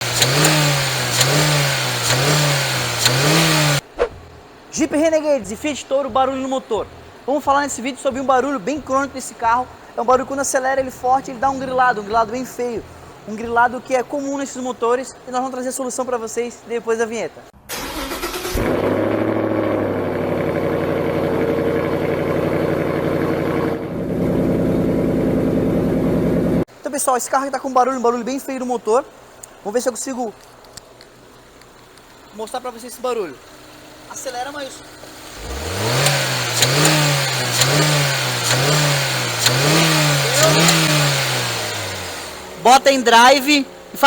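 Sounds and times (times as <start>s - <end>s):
sharp engine ticks: 0.0s - 3.8s, 35.3s - 42.2s
engine revving in short blips: 0.0s - 4.3s, 35.2s - 42.6s
car engine running: 0.0s - 4.7s, 17.7s - 26.6s, 31.2s - 44.0s.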